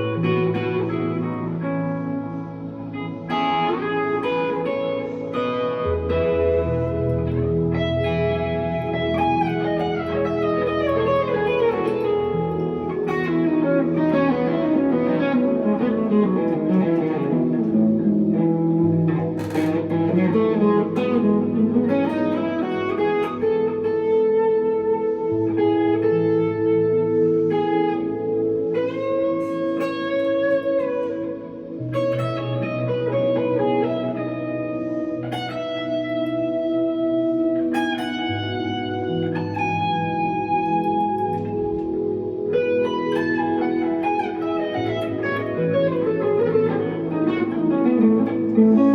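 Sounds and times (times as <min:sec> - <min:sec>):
electric guitar with delay and reverb: 0:00.0 - 0:48.9.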